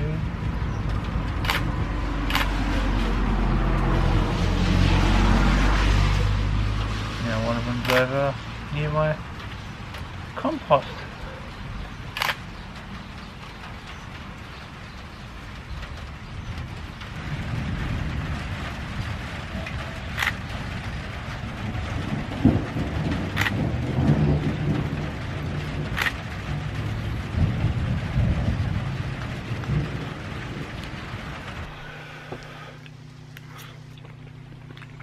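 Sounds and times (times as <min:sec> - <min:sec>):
heavy low rumble: 0:00.0 - 0:35.0
rain falling: 0:00.0 - 0:35.0
sharp clicks: 0:00.9 - 0:02.6, 0:07.8 - 0:08.1, 0:12.1 - 0:12.4, 0:20.2 - 0:20.4, 0:23.4 - 0:23.6, 0:26.0 - 0:26.2.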